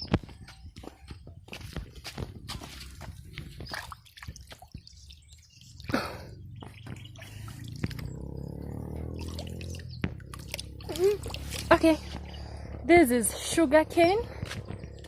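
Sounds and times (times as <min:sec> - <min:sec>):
stream water trickling: 0:03.4 - 0:12.4
low rumble: 0:06.0 - 0:15.0.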